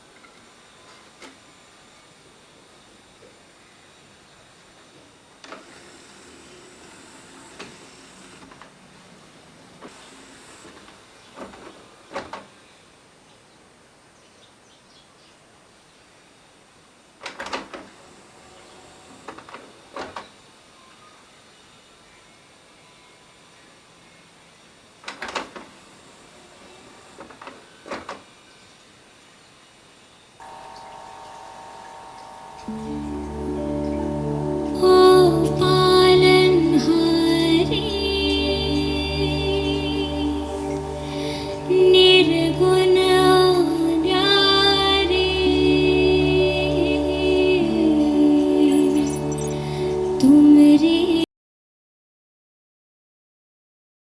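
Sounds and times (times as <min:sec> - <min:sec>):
faint steady hiss: 0:00.0 - 0:51.2
steady tone: 0:30.4 - 0:51.2.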